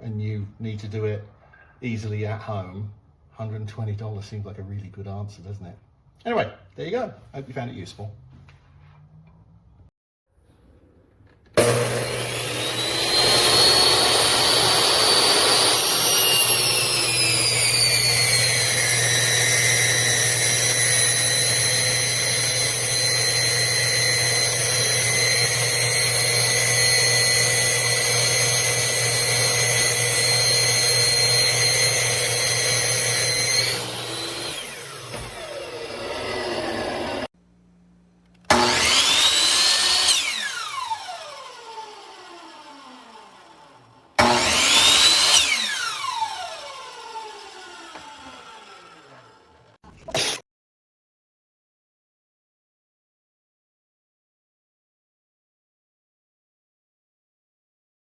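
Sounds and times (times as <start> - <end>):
miter saw motor whining: 11.6 - 37.3, 38.5 - 50.4.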